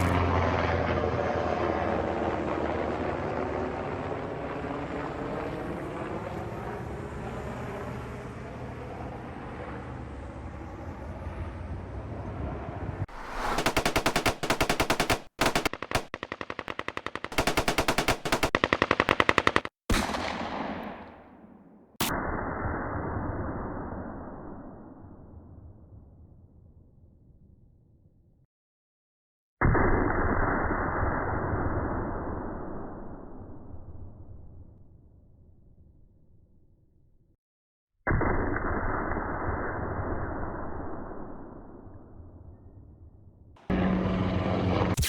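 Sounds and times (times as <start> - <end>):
helicopter rotor drone: 0.0 - 16.4, 43.6 - 45.0
machine-gun fire: 13.2 - 21.4.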